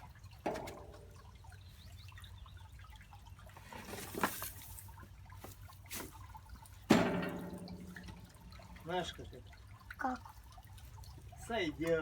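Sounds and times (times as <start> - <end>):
straw and twigs rustling and crackling: 3.6 - 6.2.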